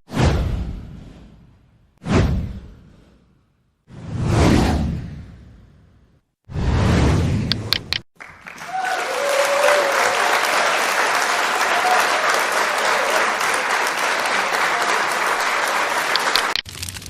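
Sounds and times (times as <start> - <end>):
crowd applauding: 8.2 - 16.7.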